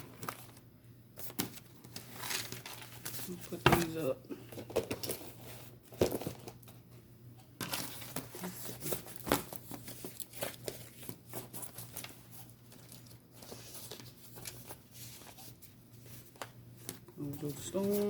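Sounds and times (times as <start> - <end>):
cards shuffling: 7.6 - 18.0.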